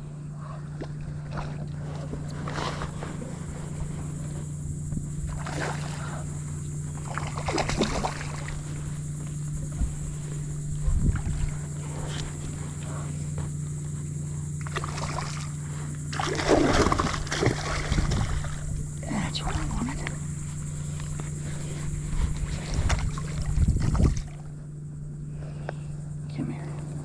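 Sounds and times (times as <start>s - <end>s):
water sloshing against kayak: 0.0s - 24.7s
low hum: 0.0s - 27.0s
fish splashing: 5.3s - 8.7s, 14.6s - 18.9s.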